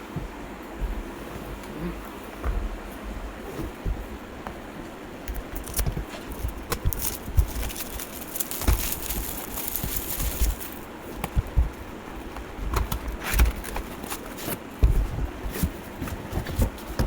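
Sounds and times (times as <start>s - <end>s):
packaging being opened: 5.3s - 11.7s
plastic crinkling: 5.3s - 14.9s.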